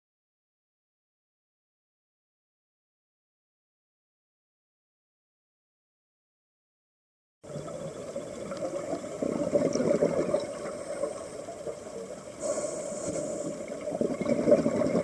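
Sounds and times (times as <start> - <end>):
underwater bubbles rushing: 7.5 - 15.0.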